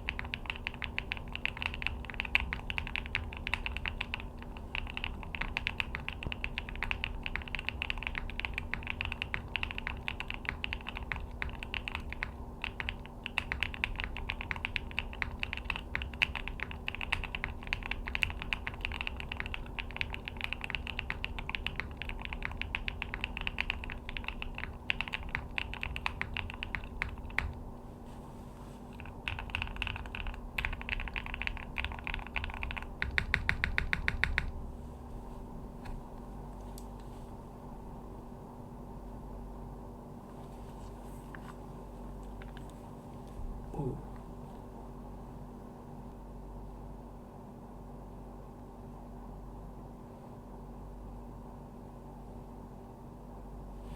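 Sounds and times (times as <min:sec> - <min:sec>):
mechanical keyboard typing: 0:00.0 - 0:27.6, 0:28.9 - 0:34.6
faint steady hum: 0:00.0 - 0:53.9.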